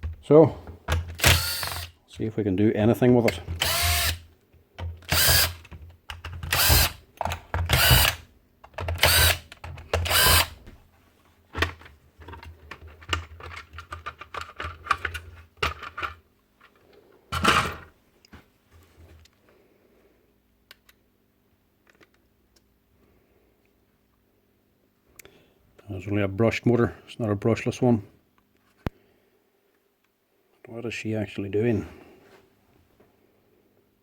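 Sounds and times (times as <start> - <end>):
power drill bursts: 1.2 - 1.9, 3.6 - 4.2, 5.1 - 5.6, 6.5 - 7.0, 7.7 - 8.2, 9.0 - 9.4, 10.0 - 10.6.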